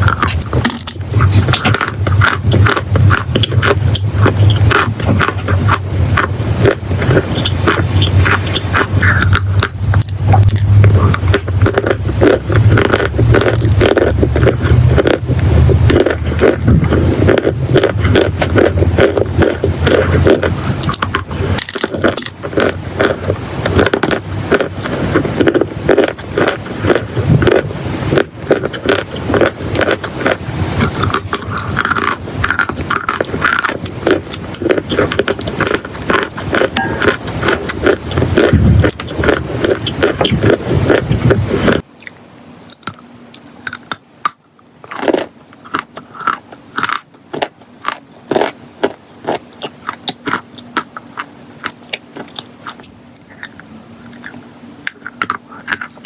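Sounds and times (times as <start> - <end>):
steady low rumble: 0.0 - 43.7.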